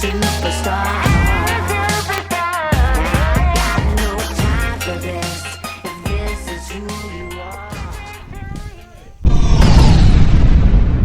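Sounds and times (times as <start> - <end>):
loud boom with low rumble: 9.2 - 11.0.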